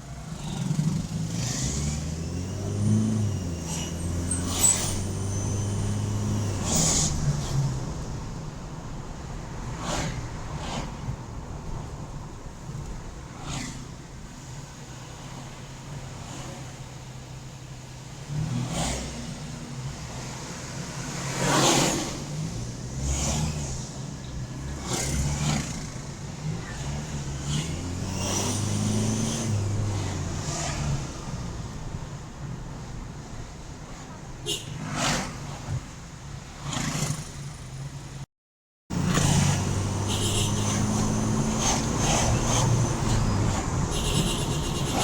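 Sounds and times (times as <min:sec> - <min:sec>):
engine revving: 0:00.4 - 0:07.8, 0:26.7 - 0:31.2, 0:38.9 - 0:45.0
turbo whistling: 0:40.0 - 0:45.0.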